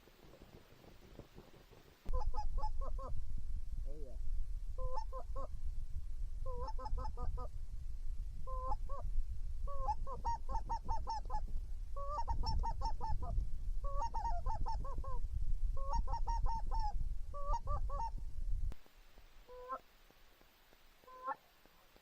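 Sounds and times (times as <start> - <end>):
wind buffeting microphone: 0.0 - 18.8
geese honking: 19.5 - 19.8, 21.1 - 21.4.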